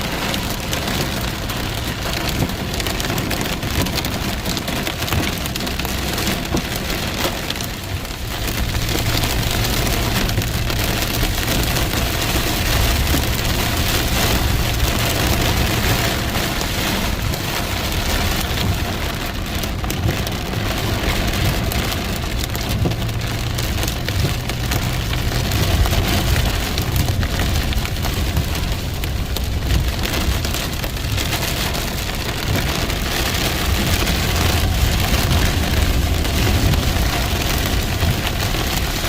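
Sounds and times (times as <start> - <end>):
heavy rain on a hard surface: 0.0 - 39.0
low rumble: 7.9 - 39.0.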